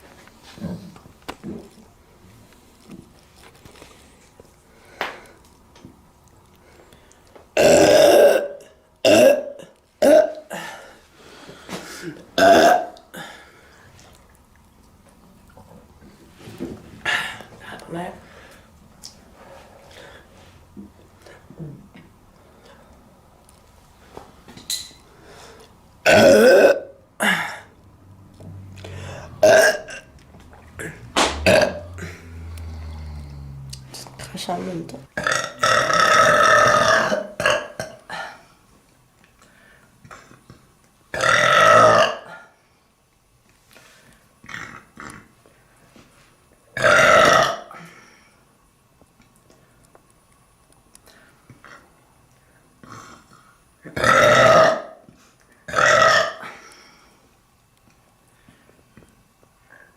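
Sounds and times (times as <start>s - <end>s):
woman belching: 7.6s - 10.7s, 12.4s - 13.0s, 26.1s - 27.0s, 29.4s - 30.1s, 30.8s - 34.2s, 35.2s - 38.0s, 41.2s - 42.3s, 46.8s - 47.7s, 53.9s - 55.0s, 55.7s - 56.4s
woman burping loudly: 7.6s - 10.8s, 12.0s - 13.3s, 26.0s - 27.7s, 29.0s - 30.1s, 30.8s - 34.0s, 35.2s - 38.2s, 41.1s - 42.4s, 46.8s - 47.8s, 53.9s - 55.0s, 55.7s - 56.6s.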